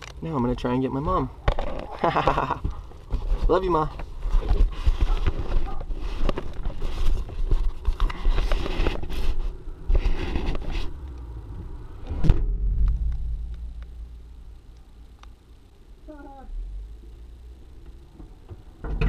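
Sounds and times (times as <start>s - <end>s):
steady low hum: 0.0s - 19.0s
low rumble: 9.4s - 19.0s
sharp loud thump: 12.1s - 14.1s.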